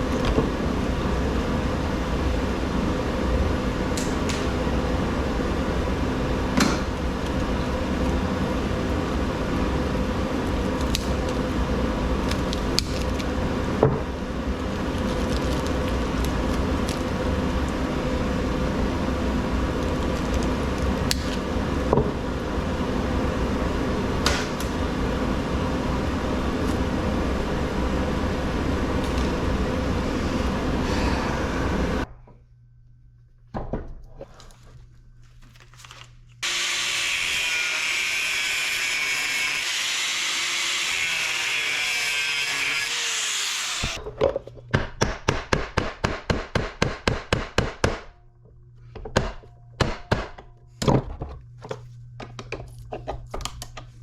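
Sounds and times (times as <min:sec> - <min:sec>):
angle grinder cutting metal: 0:36.4 - 0:44.0.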